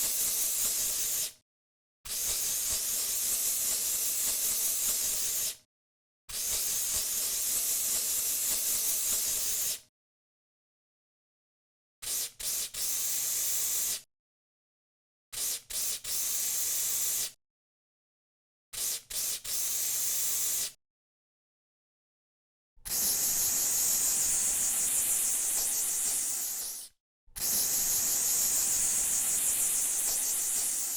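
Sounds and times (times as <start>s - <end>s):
aerosol can spraying: 19.2s - 20.7s, 22.9s - 30.9s.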